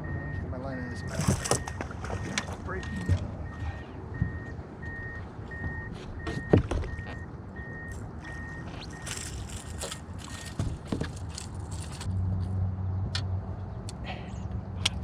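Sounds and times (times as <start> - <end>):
electronic alarm beeping: 0.0 - 10.5
knocks and handling sounds: 7.9 - 12.1.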